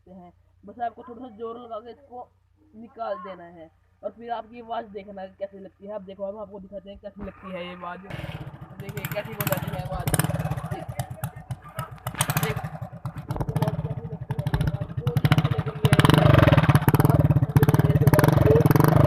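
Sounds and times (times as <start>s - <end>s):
motorcycle engine running: 3.8s - 19.0s.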